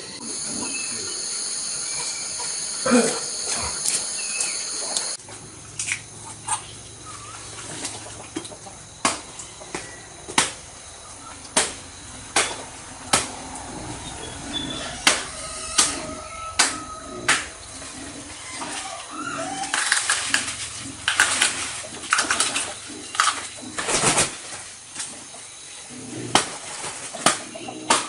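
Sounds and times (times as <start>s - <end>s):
insect buzzing: 0.0s - 5.2s, 10.8s - 24.0s
faint bird chirps: 13.8s - 19.5s.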